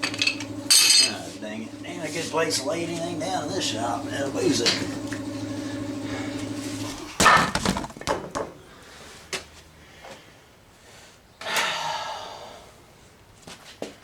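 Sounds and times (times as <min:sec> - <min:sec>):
steady hum: 0:00.0 - 0:08.9
wood and hard objects clattering: 0:06.9 - 0:08.6.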